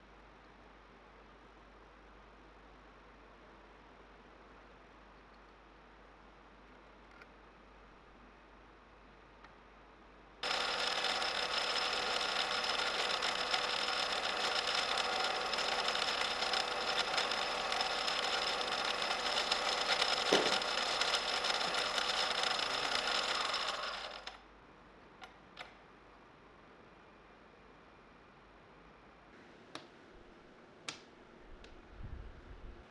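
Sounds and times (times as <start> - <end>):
angle grinder whining: 10.4 - 24.4
faint clicks: 25.2 - 25.8.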